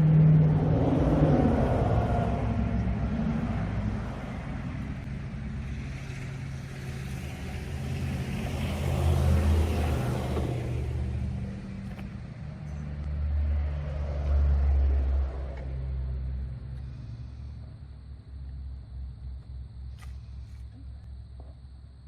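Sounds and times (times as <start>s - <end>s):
vehicle engine running: 0.0s - 22.0s.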